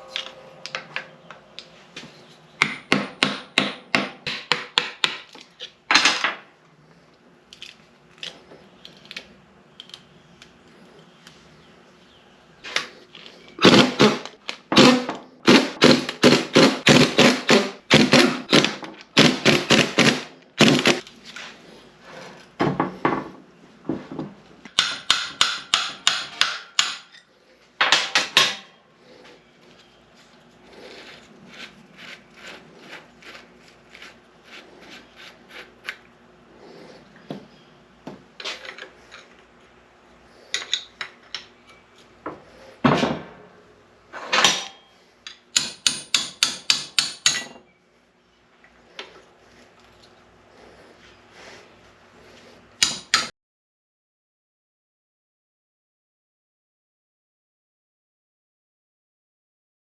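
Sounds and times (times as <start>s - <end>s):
hammer striking metal: 24.7s - 27.1s, 45.6s - 47.6s.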